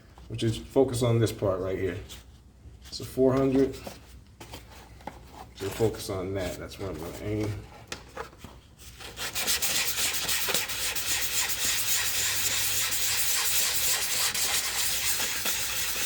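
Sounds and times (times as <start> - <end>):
sandpaper scratching: 9.0 - 16.0.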